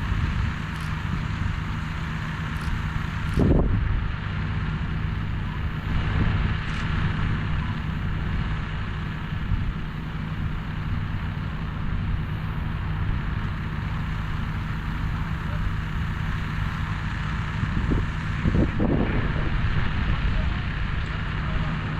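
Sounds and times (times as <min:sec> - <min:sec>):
vehicle engine rumbling: 0:00.0 - 0:21.9.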